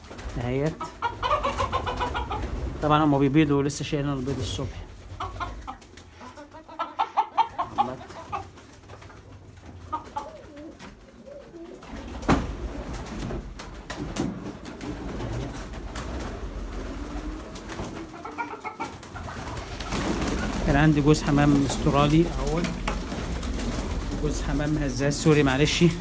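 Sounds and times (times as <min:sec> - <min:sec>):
pigeons cooing: 0:00.0 - 0:03.2, 0:04.4 - 0:14.0, 0:14.7 - 0:26.0
quick loud pigeon calls: 0:01.0 - 0:02.9, 0:14.7 - 0:26.0
rustling and handling noise: 0:07.8 - 0:26.0.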